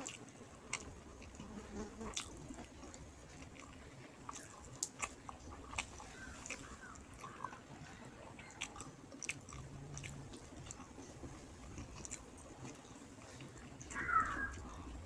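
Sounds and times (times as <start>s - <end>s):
person chewing food: 0.0s - 15.0s
wet mouth clicks and smacks: 8.5s - 11.0s.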